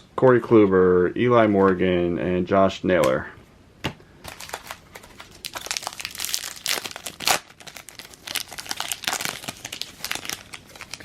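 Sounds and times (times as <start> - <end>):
wrapper crinkling and tearing: 4.2 - 11.0.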